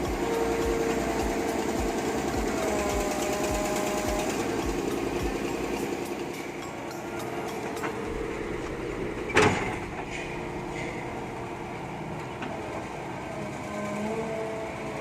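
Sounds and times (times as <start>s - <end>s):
excavator diesel engine running: 0.0s - 15.0s
sharp metallic clank: 4.2s - 12.1s.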